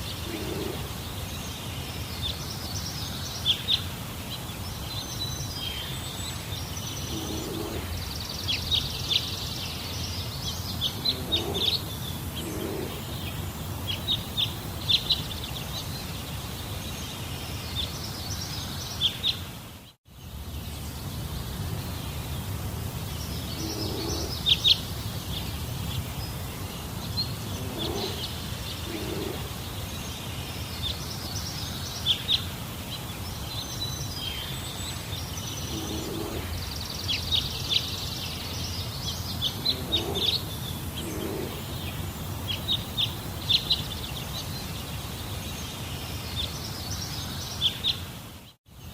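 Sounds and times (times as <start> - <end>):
bird chirps and calls: 23.3 - 26.5, 27.1 - 30.1, 33.4 - 44.7.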